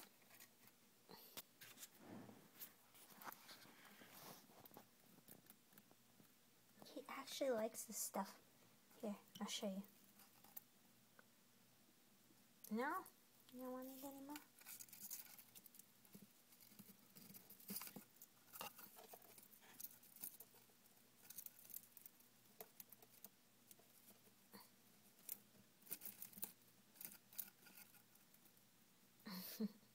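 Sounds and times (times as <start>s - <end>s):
hamster nibbling hay: 12.7s - 28.7s.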